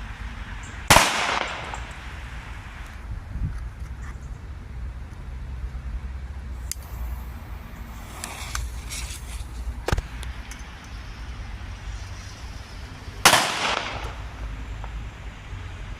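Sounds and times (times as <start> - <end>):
steady low rumble: 0.0 - 15.9
sharp crack: 0.8 - 2.2, 8.1 - 10.7, 13.2 - 15.0
firecracker bang with echo: 0.9 - 1.9, 13.3 - 14.2.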